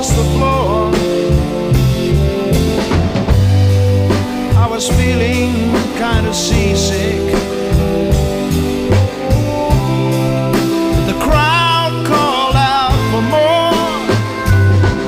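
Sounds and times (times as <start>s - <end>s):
song with drums and vocals: 0.0s - 15.0s.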